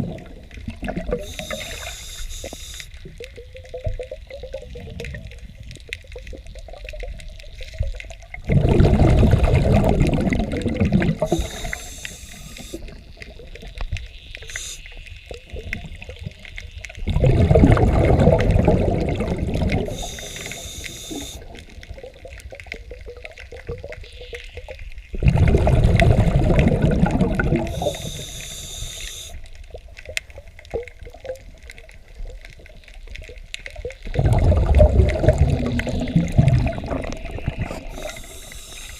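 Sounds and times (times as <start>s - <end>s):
exhaled air bubbling underwater: 0.0s - 38.9s
regulator hiss: 1.1s - 3.0s, 11.2s - 13.0s, 14.4s - 15.0s, 19.8s - 21.5s, 27.7s - 29.4s, 37.7s - 38.9s.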